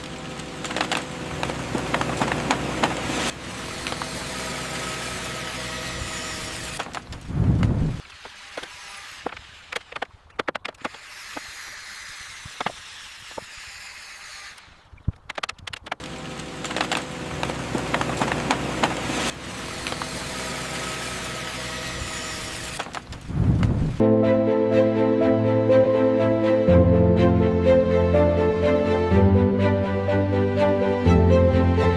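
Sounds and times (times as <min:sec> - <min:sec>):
machinery humming: 0:24.0 - 0:31.9.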